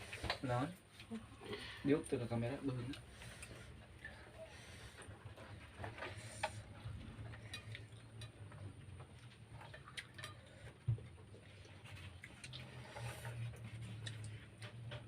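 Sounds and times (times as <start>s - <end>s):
person chewing: 7.3s - 14.8s.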